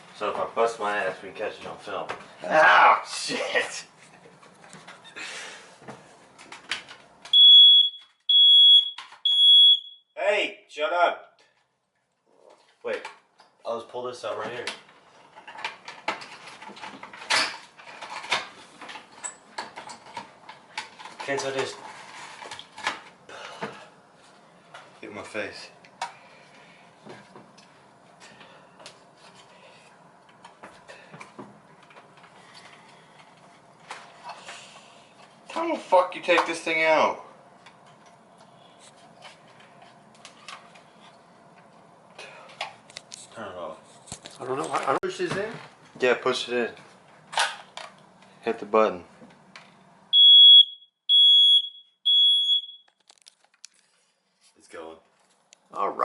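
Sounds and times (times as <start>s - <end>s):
smoke detector beeps: 7.3s - 10.2s, 50.1s - 52.9s
handling clicks and rustling: 52.9s - 53.9s.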